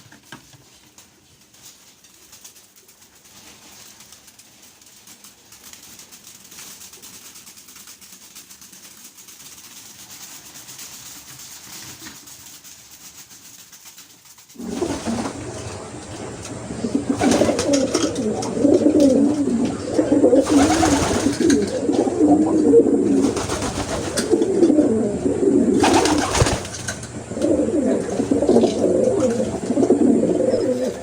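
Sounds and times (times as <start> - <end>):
short rustling bursts: 1.3 - 31.0
pigeons cooing: 14.6 - 31.0.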